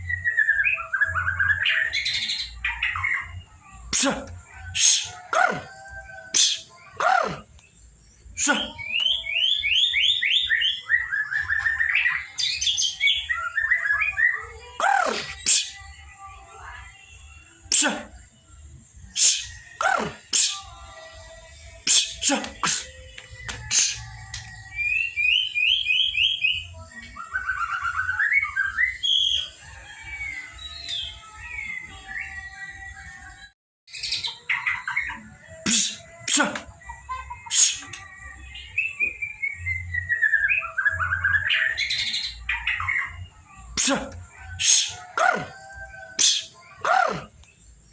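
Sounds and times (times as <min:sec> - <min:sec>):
bird chirping song: 0:00.0 - 0:47.9.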